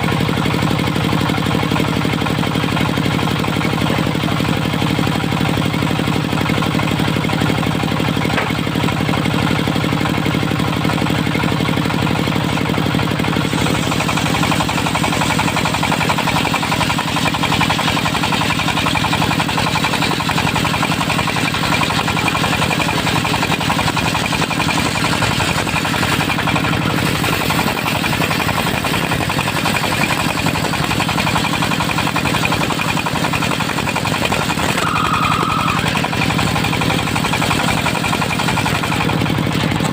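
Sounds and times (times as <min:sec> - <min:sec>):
diesel engine knocking: 0:00.0 - 0:39.9
high-pitched noise: 0:34.6 - 0:36.0.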